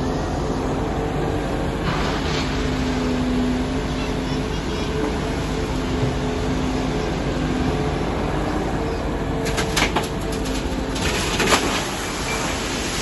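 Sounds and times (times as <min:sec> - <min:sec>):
diesel engines running: 0:00.0 - 0:13.0.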